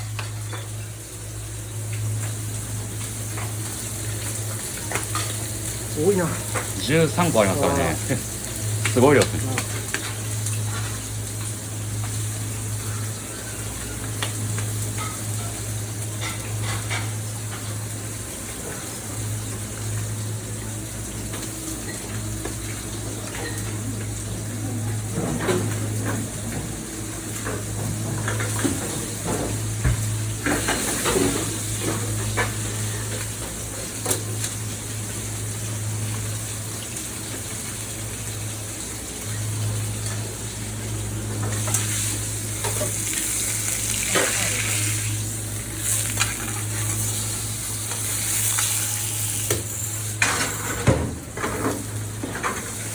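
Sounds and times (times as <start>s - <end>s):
food sizzling: 0.0s - 26.0s, 26.8s - 50.8s
pans and utensils clattering: 14.8s - 17.7s, 23.2s - 23.9s, 25.0s - 33.5s, 48.0s - 52.9s.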